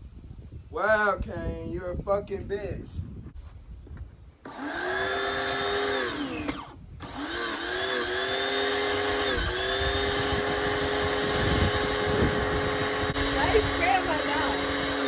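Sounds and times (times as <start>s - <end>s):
pressure washer motor whining: 4.4s - 15.0s.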